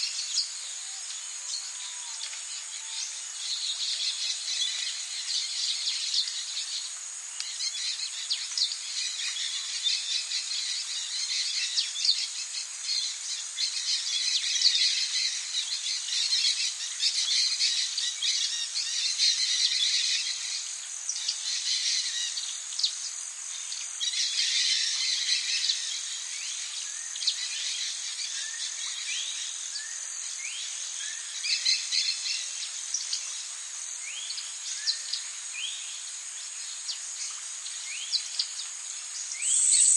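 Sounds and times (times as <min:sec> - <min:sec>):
chorus of insects: 0:00.0 - 0:39.9
bird calls: 0:39.2 - 0:39.9
short rising bird chirps: 0:39.4 - 0:39.9.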